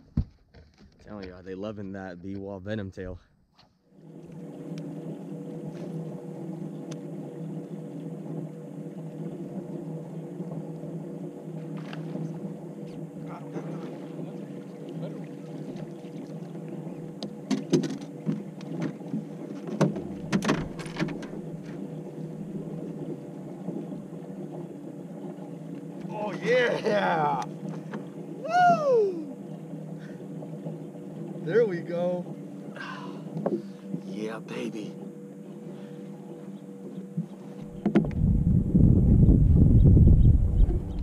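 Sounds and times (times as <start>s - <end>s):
knocks and clatter on a boat: 0.0s - 2.6s, 11.6s - 26.4s, 27.3s - 41.0s
electric motor humming: 3.9s - 41.0s.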